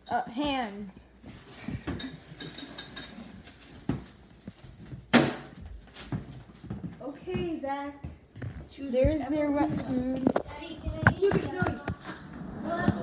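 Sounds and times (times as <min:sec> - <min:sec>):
dish and spoon clinking: 0:01.9 - 0:03.5.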